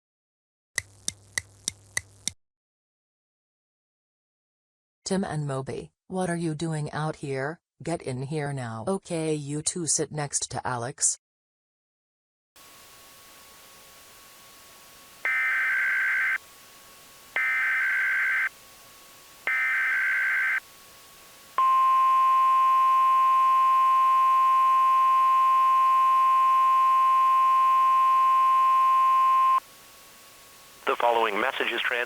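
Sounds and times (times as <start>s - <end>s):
loud steady attention tone: 15.0s - 32.0s.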